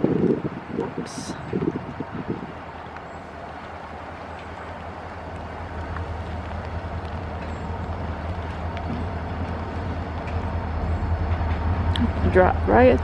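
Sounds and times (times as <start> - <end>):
diesel locomotives rumbling: 0.0 - 13.0.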